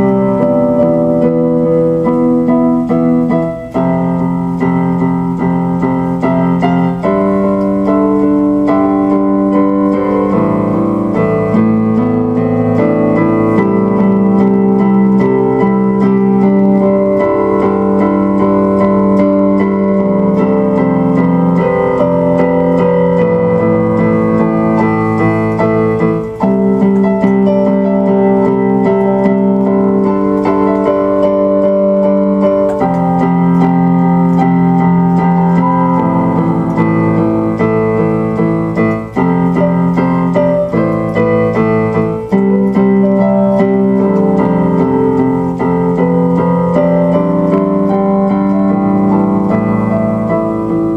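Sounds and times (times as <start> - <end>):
sustained piano chords: 0.0 - 50.9.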